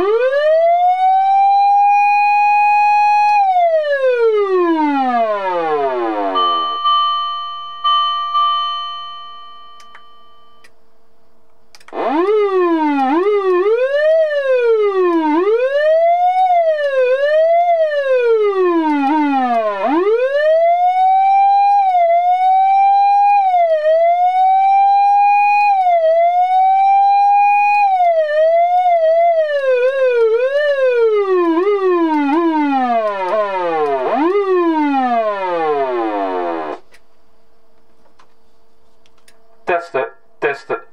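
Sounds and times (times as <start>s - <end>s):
fire engine siren: 0.0s - 7.1s, 11.9s - 36.8s
electronic bell strikes: 6.4s - 10.7s.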